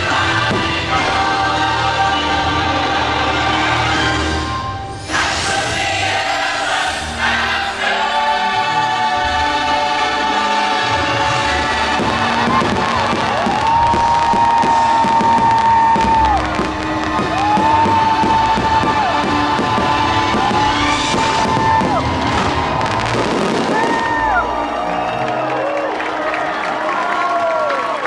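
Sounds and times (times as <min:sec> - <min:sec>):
fireworks bangs and crackles: 0:00.0 - 0:01.4, 0:10.9 - 0:24.8
music over loudspeakers: 0:00.0 - 0:25.2
crowd noise: 0:00.0 - 0:28.0.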